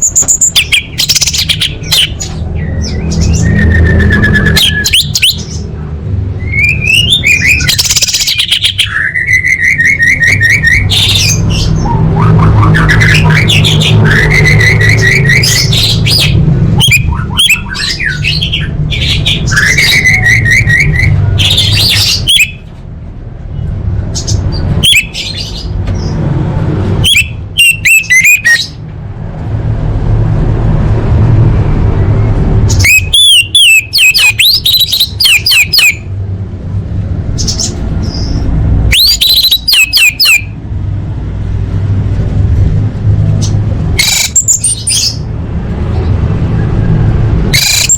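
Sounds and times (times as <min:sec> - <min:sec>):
bird singing whistled phrases: 0:06.4 - 0:12.0, 0:27.1 - 0:28.7, 0:32.8 - 0:36.0, 0:38.9 - 0:40.5
steady low rumble: 0:10.7 - 0:19.8.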